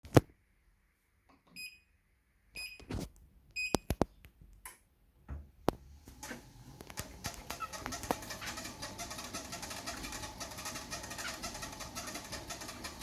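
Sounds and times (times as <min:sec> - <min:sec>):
sharp clicks and knocks: 0:06.8 - 0:08.5
treadmill beeping: 0:07.2 - 0:13.0.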